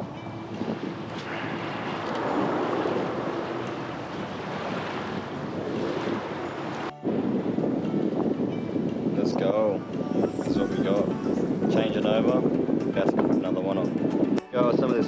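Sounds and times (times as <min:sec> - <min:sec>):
waves washing at shore: 0:00.0 - 0:08.1
wind on microphone: 0:00.0 - 0:15.0.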